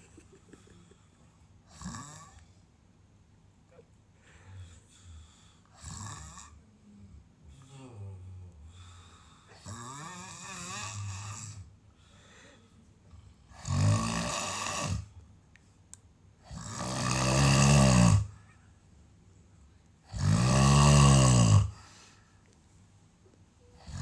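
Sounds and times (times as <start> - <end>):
person snoring: 9.5 - 11.6, 13.5 - 15.1, 16.5 - 18.4, 20.1 - 21.9, 23.8 - 24.0.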